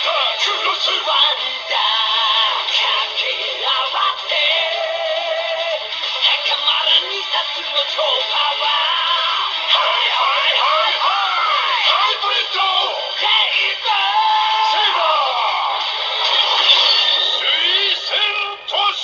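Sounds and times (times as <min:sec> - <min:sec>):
sung music through small toy speaker: 0:00.0 - 0:19.0.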